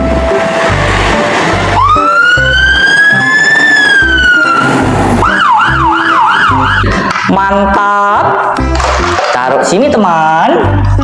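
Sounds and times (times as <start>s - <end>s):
background music with steady beat: 0.0s - 11.0s
siren wailing: 0.3s - 7.2s.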